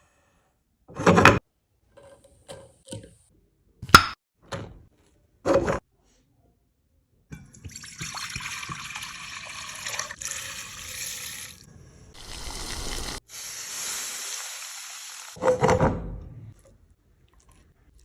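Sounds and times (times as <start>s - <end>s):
liquid pouring: 7.6s - 11.6s, 12.2s - 13.2s.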